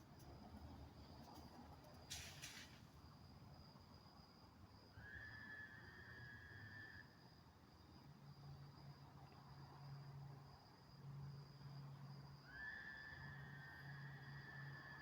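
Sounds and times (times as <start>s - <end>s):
crickets chirring: 0.0s - 15.0s
whistle-like call: 12.5s - 13.2s.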